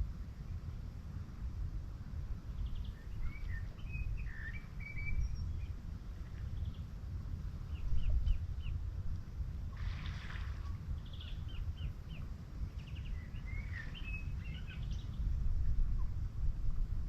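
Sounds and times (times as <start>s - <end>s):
steady low rumble: 0.0s - 17.0s
birds chirping and warbling: 2.5s - 5.8s, 7.6s - 8.8s, 10.6s - 16.1s.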